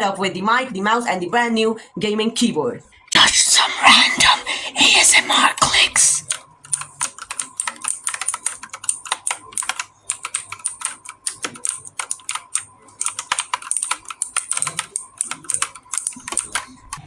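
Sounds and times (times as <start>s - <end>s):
mechanical keyboard typing: 4.2s - 17.0s.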